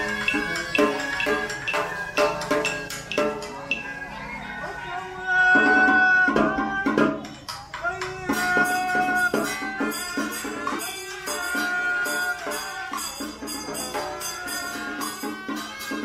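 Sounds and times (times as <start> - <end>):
rattling percussion beat: 0.0 - 4.4, 5.5 - 16.0
wavering held melody: 0.0 - 4.8.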